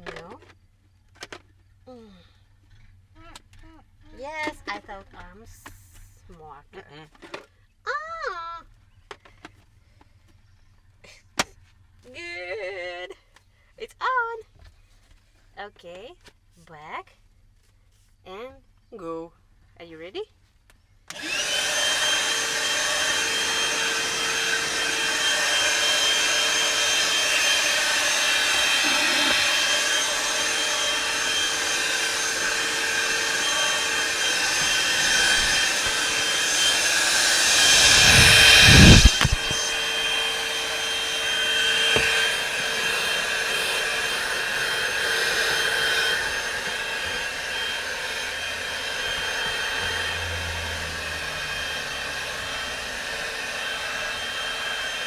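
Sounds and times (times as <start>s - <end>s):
handheld vacuum whining: 21.1s - 55.0s.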